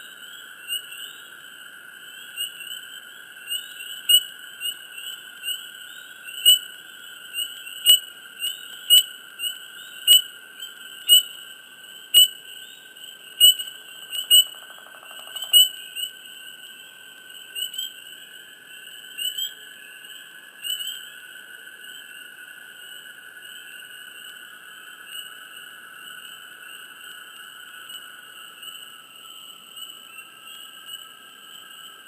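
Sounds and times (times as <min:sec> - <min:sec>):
frogs chirping: 0:00.0 - 0:32.0.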